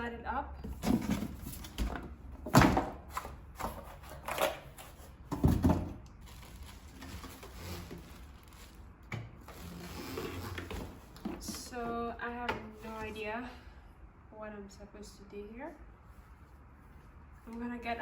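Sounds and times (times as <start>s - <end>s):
plastic knocks and clatters: 5.3s - 6.0s.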